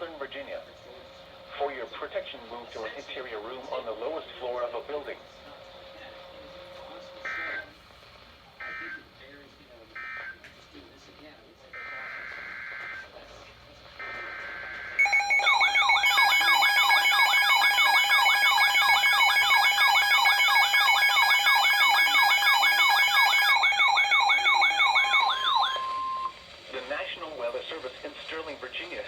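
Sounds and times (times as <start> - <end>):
warbling alarm tone: 14.3 - 26.4.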